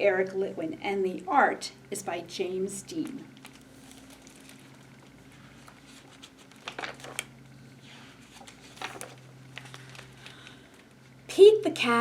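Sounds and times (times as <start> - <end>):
faint steady hum: 0.0 - 12.0
paper crackles: 3.0 - 7.3, 8.2 - 10.6
book pages turning: 3.0 - 10.6
paper rustling: 3.4 - 7.3, 7.9 - 10.6.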